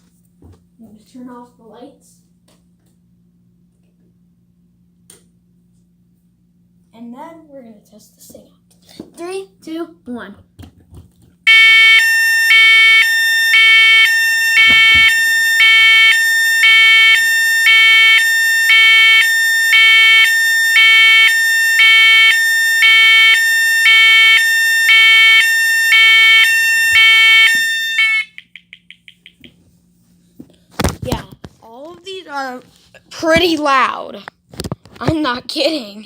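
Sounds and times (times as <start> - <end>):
steady high alarm tone: 11.5 - 28.6
fire alarm two-tone signal: 11.5 - 29.0.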